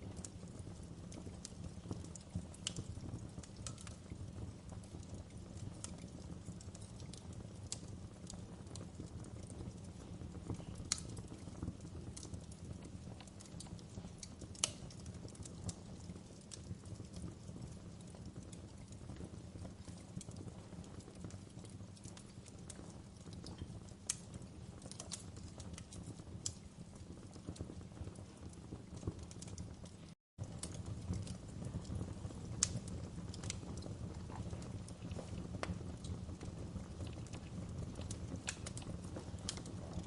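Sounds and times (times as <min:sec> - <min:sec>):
wood fire crackling: 0:00.0 - 0:40.0.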